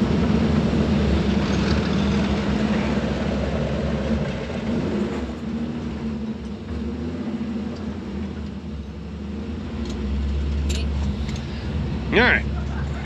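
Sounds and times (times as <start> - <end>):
vehicle engine and road noise: 0.0 - 13.0.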